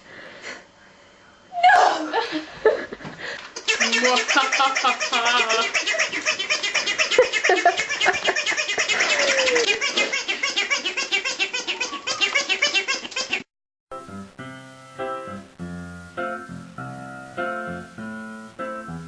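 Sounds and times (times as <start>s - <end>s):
people laughing hard: 1.9s - 11.0s.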